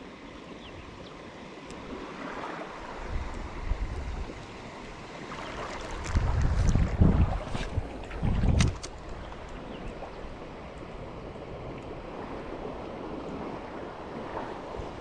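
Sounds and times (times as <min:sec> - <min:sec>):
lake water lapping: 0:01.6 - 0:15.0
wind noise on microphone: 0:02.9 - 0:04.4, 0:05.8 - 0:15.0.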